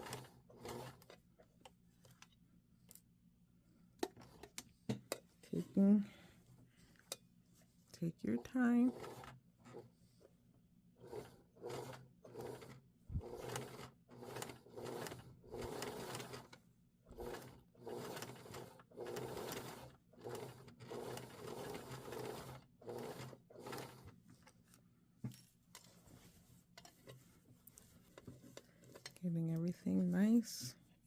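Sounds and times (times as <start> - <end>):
sewing machine stitching: 0.0 - 1.2, 8.4 - 9.9, 11.0 - 24.2.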